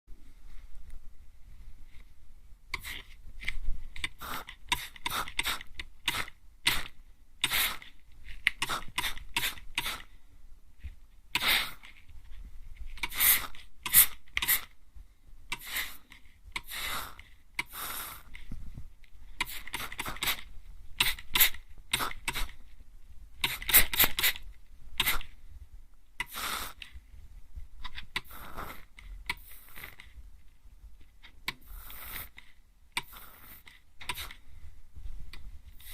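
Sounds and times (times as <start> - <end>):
mist sprayer spritzing water: 4.2 - 7.8, 8.6 - 10.0.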